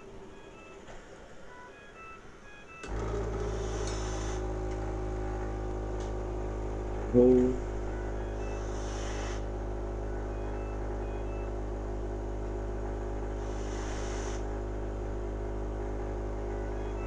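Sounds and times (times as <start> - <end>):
machine steady hum: 0.0 - 17.0
air hissing: 8.6 - 9.9, 13.3 - 14.6.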